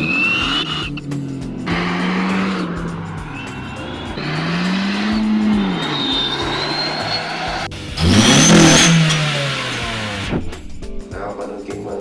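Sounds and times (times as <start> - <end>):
car engine revving: 0.0 - 11.0
turbo whistle: 3.3 - 10.4.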